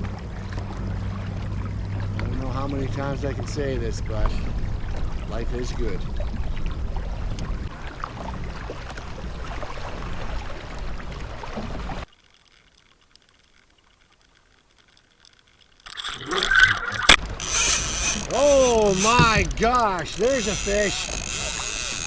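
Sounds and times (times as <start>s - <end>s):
low wind rumble: 0.0s - 12.0s
water around a kayak: 0.0s - 22.0s
rattling: 15.8s - 22.0s.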